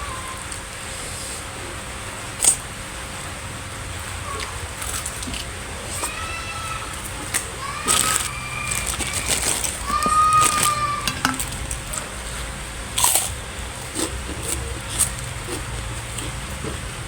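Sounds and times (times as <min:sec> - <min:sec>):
chewing: 0:04.3 - 0:06.2, 0:06.9 - 0:10.8, 0:11.4 - 0:17.0
utensils on a plate: 0:07.3 - 0:12.0.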